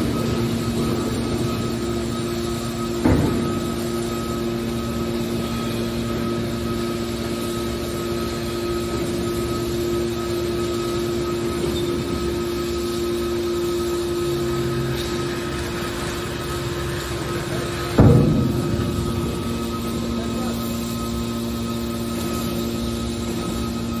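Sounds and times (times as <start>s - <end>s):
hydraulic power unit hum: 0.0s - 24.0s
sharp knock: 18.0s - 21.1s.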